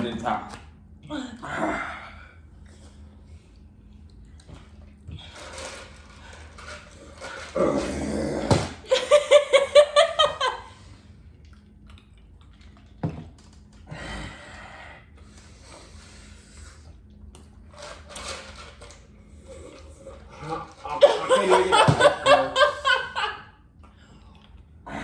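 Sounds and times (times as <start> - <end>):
person laughing: 8.9 - 10.8, 20.9 - 23.5.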